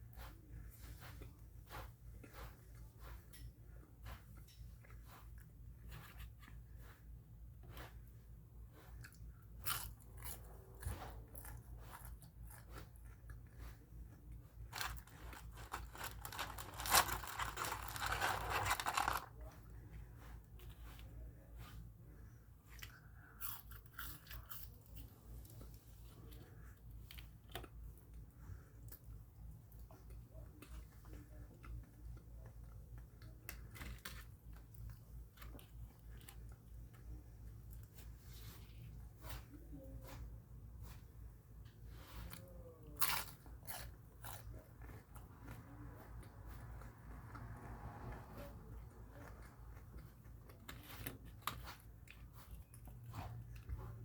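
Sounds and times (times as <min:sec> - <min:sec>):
person chewing crunchy food: 0:07.7 - 0:19.6, 0:22.6 - 0:39.4, 0:41.9 - 0:54.0
person crunching food: 0:09.0 - 0:13.6, 0:14.7 - 0:19.6, 0:22.7 - 0:25.7, 0:42.8 - 0:45.6.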